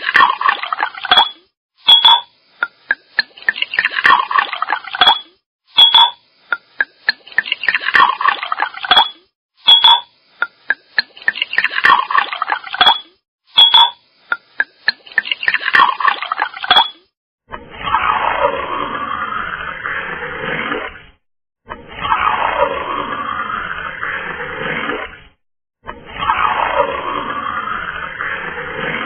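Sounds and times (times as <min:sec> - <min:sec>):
water splashing in a glass: 0:00.0 - 0:17.1
ice clinking in a glass: 0:00.5 - 0:02.3, 0:03.2 - 0:06.2, 0:07.1 - 0:10.1, 0:13.6 - 0:14.0, 0:14.9 - 0:17.0
glass ringing: 0:01.1 - 0:02.3, 0:05.0 - 0:06.2, 0:08.9 - 0:10.1, 0:12.8 - 0:14.0, 0:16.7 - 0:17.0.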